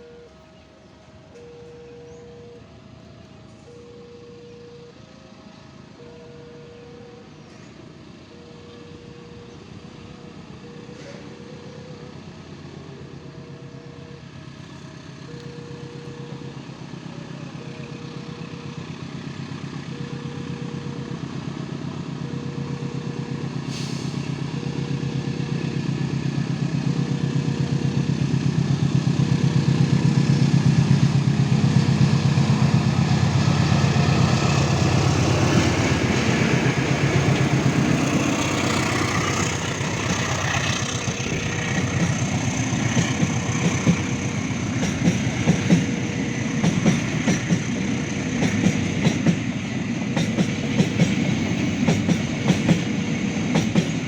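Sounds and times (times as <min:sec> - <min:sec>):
level-crossing electronic warning tone: 0:00.0 - 0:24.1, 0:29.2 - 0:53.6
approaching train engine: 0:00.0 - 0:54.0.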